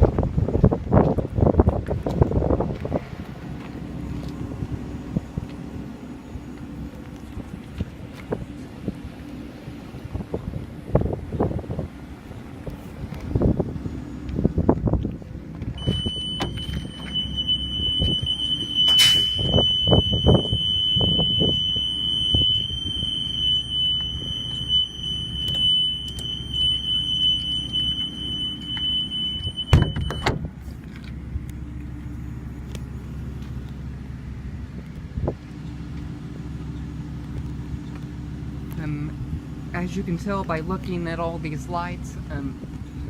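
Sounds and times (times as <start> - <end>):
engine idling: 0.0 - 43.0
high-pitched electronic buzzer: 15.8 - 24.1.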